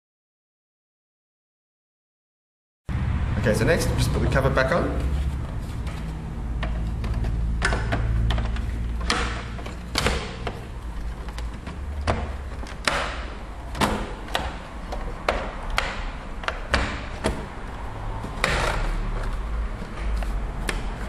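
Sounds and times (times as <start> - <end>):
plastic clicks and knocks: 5.8 - 17.5.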